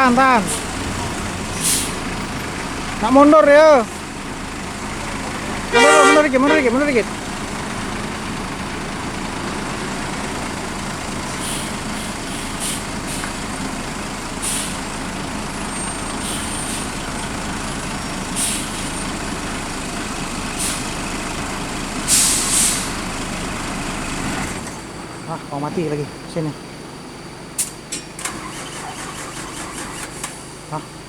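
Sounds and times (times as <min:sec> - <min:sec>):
bus diesel engine running: 0:00.0 - 0:31.0
air brake hisses: 0:01.6 - 0:02.1, 0:11.2 - 0:13.4, 0:14.4 - 0:14.8, 0:16.0 - 0:17.0, 0:18.3 - 0:19.0, 0:20.6 - 0:20.9, 0:22.1 - 0:23.0.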